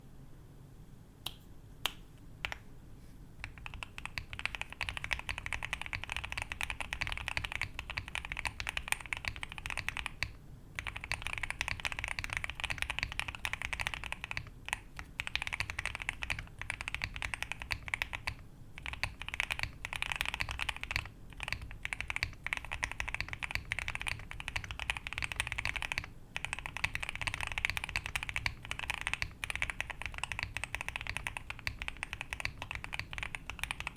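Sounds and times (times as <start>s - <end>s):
typing on mechanical keyboard: 3.4s - 33.9s.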